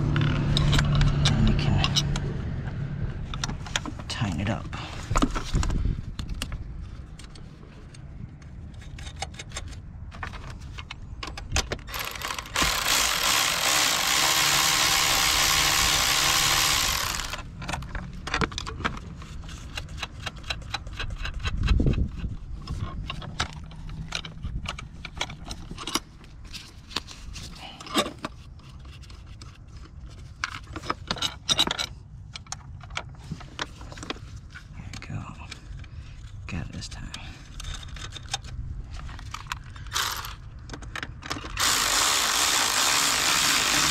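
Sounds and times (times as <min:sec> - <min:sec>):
hand ratchet clicking: 0:11.9 - 0:17.4, 0:41.6 - 0:43.9.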